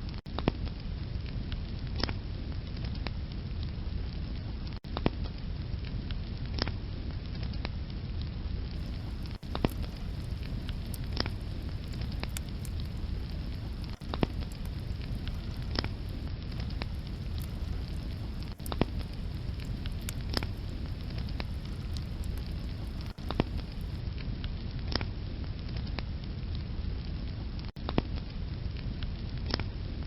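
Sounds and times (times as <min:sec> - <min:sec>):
fire crackling and popping: 0:08.8 - 0:24.0
low rumble of flames: 0:08.8 - 0:24.0.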